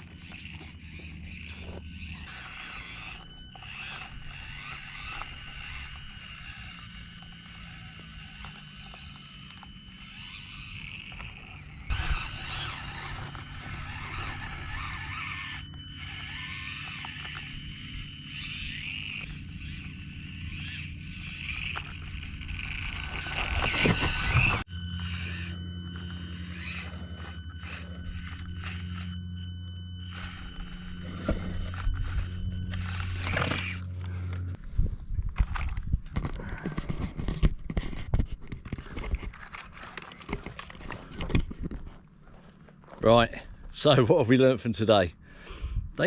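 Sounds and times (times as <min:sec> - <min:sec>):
small electric motor whining: 0:00.0 - 0:43.7
tyres scraping on stone: 0:20.6 - 0:24.7.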